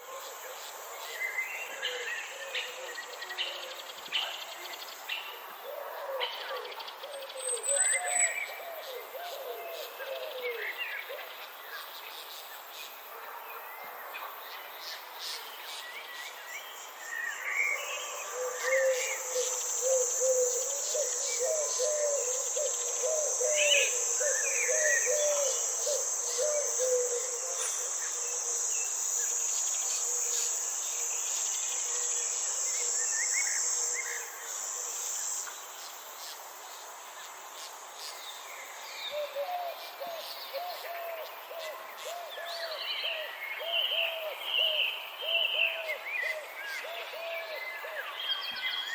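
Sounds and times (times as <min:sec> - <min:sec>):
high insect buzz: 0:15.2 - 0:39.0.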